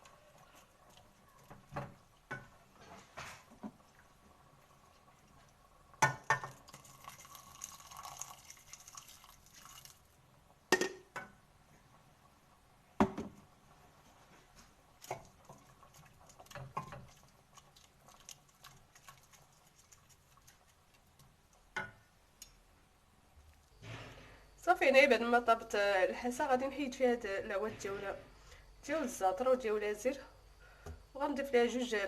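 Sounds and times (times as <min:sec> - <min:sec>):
hot liquid hissing: 0:06.0 - 0:10.1.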